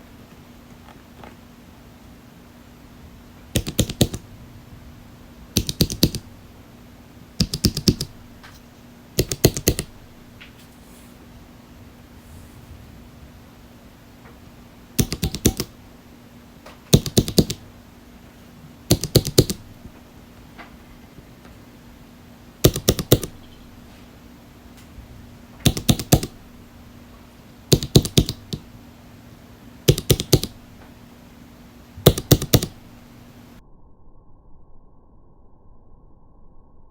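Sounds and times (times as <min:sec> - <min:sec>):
faint hum: 0:00.0 - 0:36.9
mechanical keyboard typing: 0:03.5 - 0:04.2, 0:05.5 - 0:06.3, 0:07.4 - 0:08.3, 0:09.2 - 0:10.0, 0:15.0 - 0:15.8, 0:16.9 - 0:17.6, 0:18.9 - 0:19.7, 0:22.6 - 0:23.4, 0:25.6 - 0:26.4, 0:27.7 - 0:28.7, 0:29.8 - 0:30.6, 0:32.0 - 0:32.8.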